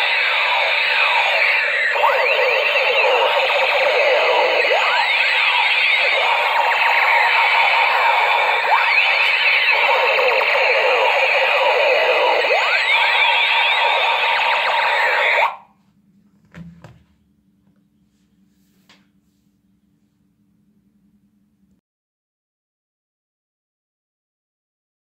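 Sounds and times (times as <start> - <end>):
toy gun electronic buzzing: 0.0 - 15.4.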